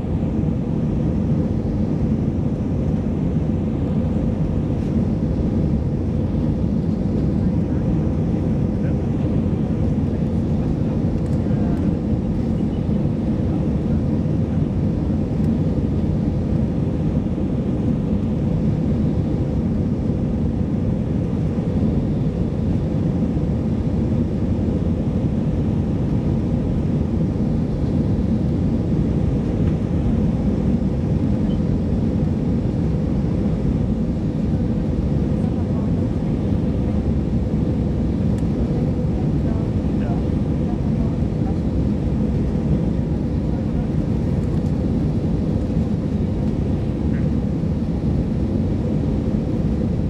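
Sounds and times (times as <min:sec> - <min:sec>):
aircraft cabin engine rush: 0:00.0 - 0:50.0.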